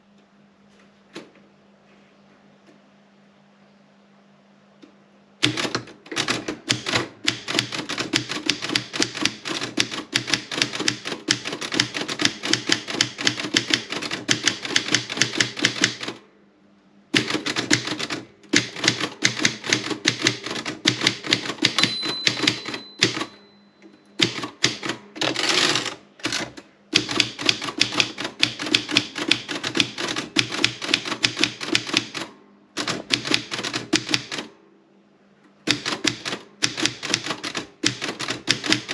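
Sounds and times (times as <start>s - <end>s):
typewriter carriage return rattle: 5.4s - 16.2s, 17.2s - 23.4s, 24.2s - 34.5s, 35.7s - 38.9s
typewriter keys striking: 5.4s - 16.2s, 17.2s - 23.4s, 24.2s - 34.5s, 35.7s - 38.9s
typewriter margin bell ring: 21.6s - 23.8s.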